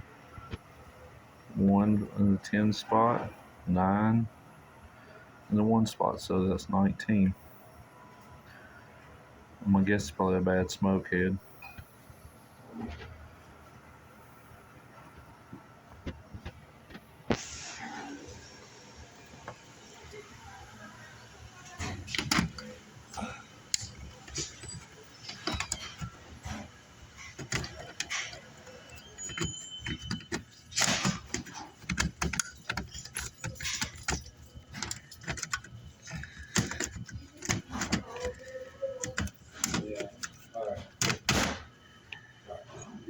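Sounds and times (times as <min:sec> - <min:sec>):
handling clicks and knocks: 0:21.8 - 0:22.8, 0:23.7 - 0:41.7.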